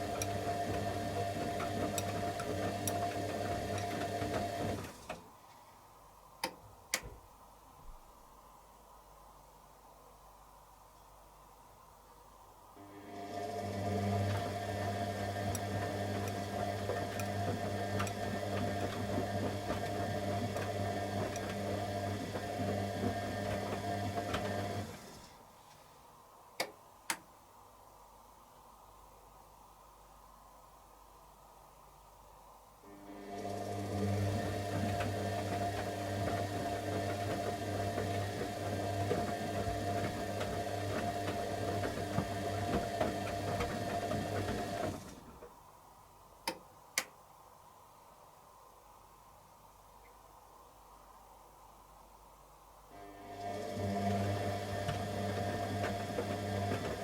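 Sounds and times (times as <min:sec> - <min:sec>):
washing machine motor humming: 0:00.0 - 0:05.2, 0:12.8 - 0:25.4, 0:32.9 - 0:45.4, 0:53.0 - 0:57.0
sharp clicks: 0:46.4 - 0:47.2.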